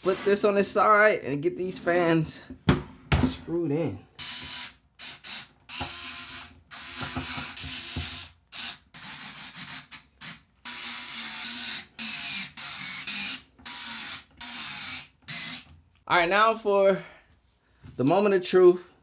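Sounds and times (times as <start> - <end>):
electric screwdriver driving screws: 4.2 - 15.7.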